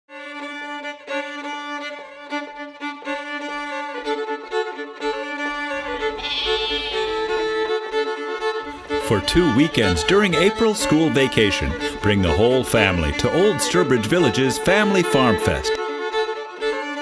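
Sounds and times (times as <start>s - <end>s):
fiddle tune: 0.1s - 17.0s
sustained drone note: 5.4s - 7.9s
low rumble: 5.5s - 7.8s.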